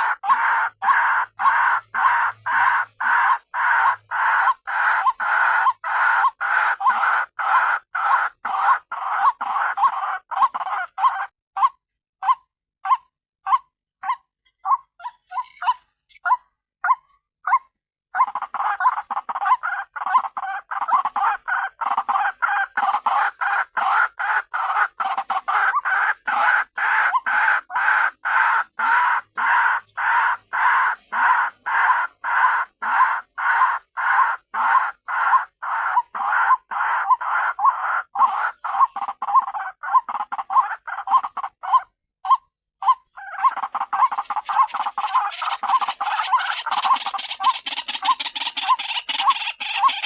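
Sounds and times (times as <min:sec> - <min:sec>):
waterhen calling: 0:00.0 - 0:11.8, 0:18.2 - 0:50.0.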